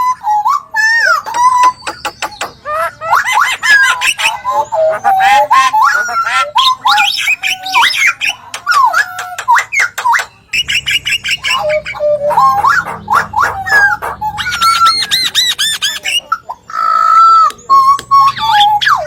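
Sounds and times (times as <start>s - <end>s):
songbirds singing: 0.0s - 19.0s.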